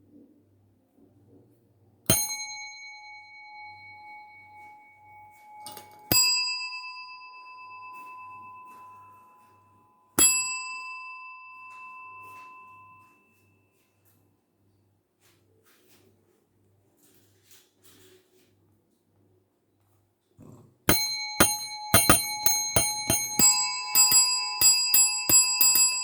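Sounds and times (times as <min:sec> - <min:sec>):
small metal bell ringing: 0:02.1 - 0:13.8, 0:20.4 - 0:26.0.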